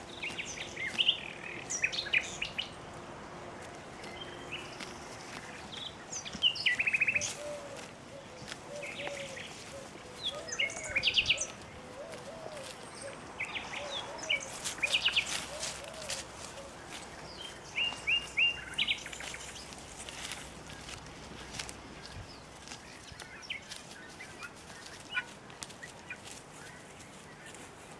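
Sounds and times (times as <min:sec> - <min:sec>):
songbirds chirping and trilling: 0:00.0 - 0:27.9.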